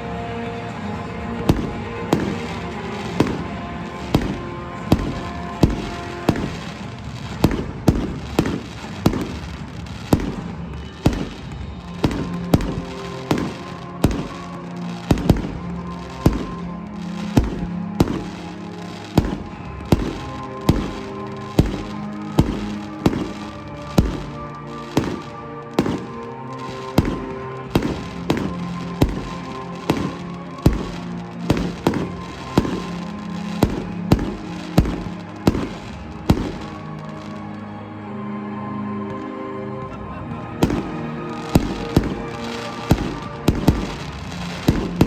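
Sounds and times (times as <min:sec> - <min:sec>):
music with long held notes: 0:00.0 - 0:45.0
fireworks bangs: 0:01.4 - 0:37.5, 0:39.9 - 0:45.0.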